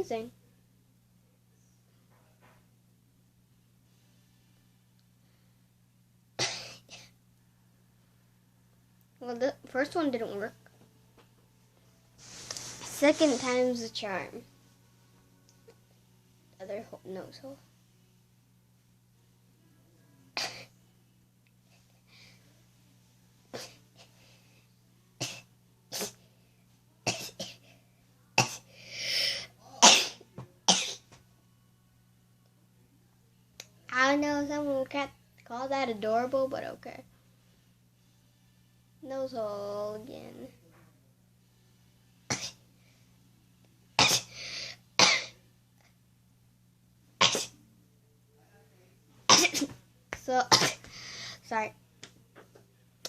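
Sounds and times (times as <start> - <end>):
person sneezing: 25.2 - 26.2, 28.4 - 31.0, 42.3 - 42.6, 44.0 - 45.4, 47.2 - 47.6, 49.3 - 49.8, 50.5 - 51.2.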